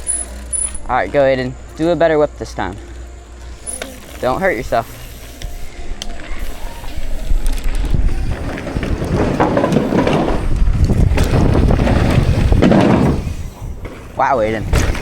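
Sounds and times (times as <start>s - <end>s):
bike tyre rumble: 0.0s - 15.0s
wind on microphone: 5.5s - 13.8s.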